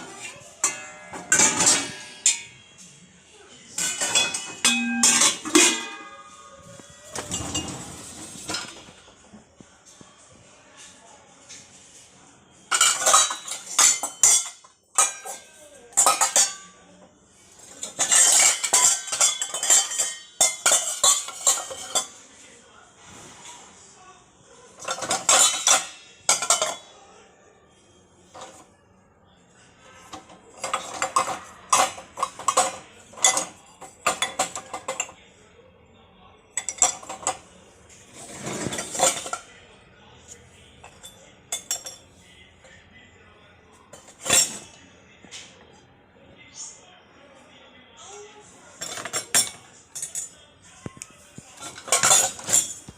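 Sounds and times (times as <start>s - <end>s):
dishes and cutlery clattering: 0.0s - 2.9s, 3.7s - 9.4s, 12.7s - 22.2s, 24.7s - 27.0s, 28.3s - 28.7s, 29.8s - 35.2s, 36.6s - 39.6s, 40.8s - 42.2s, 43.9s - 45.4s, 48.8s - 50.4s, 51.4s - 52.9s.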